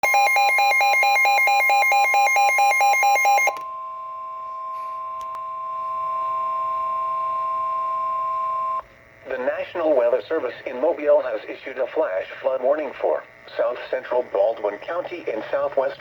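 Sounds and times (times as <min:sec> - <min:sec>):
alternating electronic alarm tone: 0:00.0 - 0:08.8
two-tone attention signal: 0:00.0 - 0:08.8.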